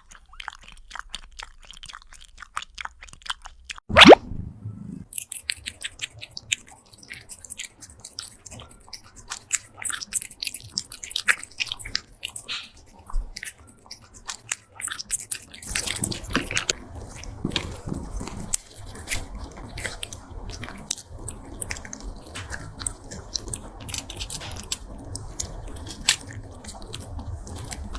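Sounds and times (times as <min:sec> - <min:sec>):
cat crunching food: 0:13.4 - 0:27.9.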